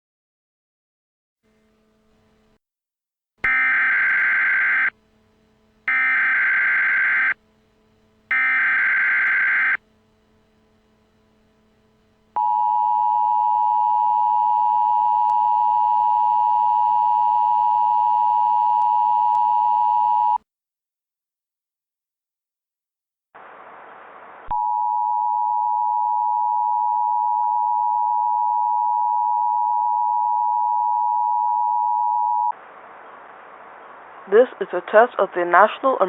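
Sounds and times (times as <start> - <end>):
data tone bursts: 3.5 - 4.9, 5.9 - 7.4, 8.3 - 9.8
two-tone attention signal: 3.5 - 4.9, 5.9 - 7.4, 8.3 - 9.8.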